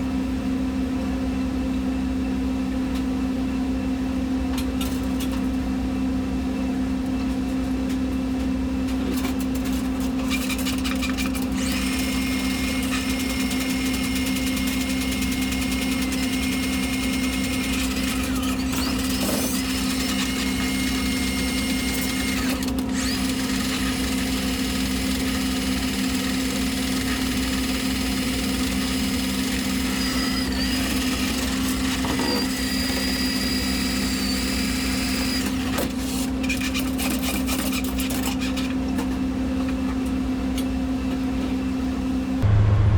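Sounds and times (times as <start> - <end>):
small electric motor whine: 10.3 - 36.3
low machinery hum: 38.7 - 42.9.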